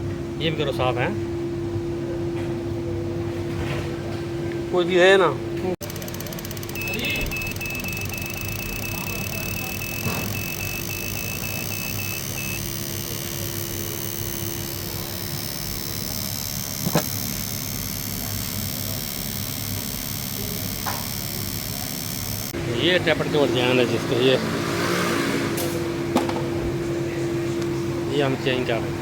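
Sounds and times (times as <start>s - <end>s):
machine running: 5.8s - 24.1s.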